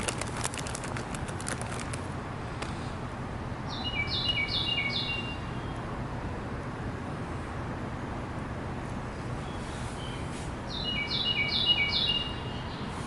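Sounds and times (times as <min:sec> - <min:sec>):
songbird singing: 0:03.6 - 0:05.9, 0:09.4 - 0:13.0.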